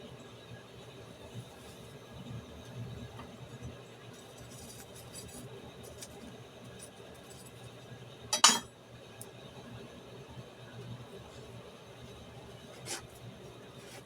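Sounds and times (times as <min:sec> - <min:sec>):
forge tool clinking on metal: 0:08.3 - 0:08.7.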